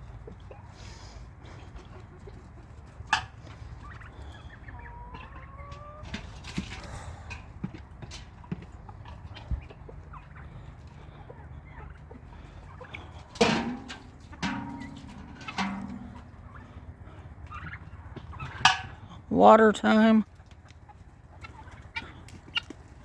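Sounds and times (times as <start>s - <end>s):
chickens clucking: 0.0s - 23.0s
turkeys calling: 0.0s - 23.0s
steady low rumble: 8.7s - 19.3s.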